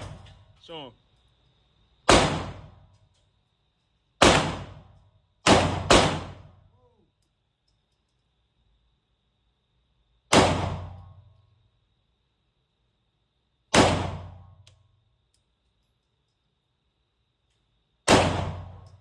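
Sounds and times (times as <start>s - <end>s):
pistol shots echoing indoors: 2.0s - 3.0s, 4.2s - 6.6s, 10.3s - 11.4s, 13.7s - 14.7s, 18.0s - 19.0s.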